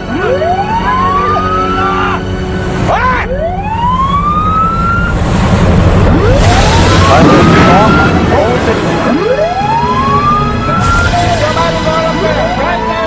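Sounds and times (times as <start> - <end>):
siren rising whoops: 0.1 - 2.3, 2.9 - 5.2, 6.0 - 11.2.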